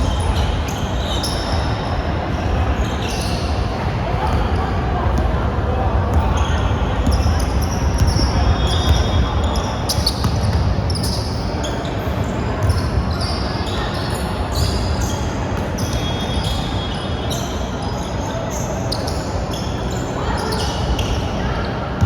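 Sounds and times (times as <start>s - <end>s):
sneakers squeaking on floor: 0.0s - 22.0s
basketball bouncing on court: 6.0s - 11.2s.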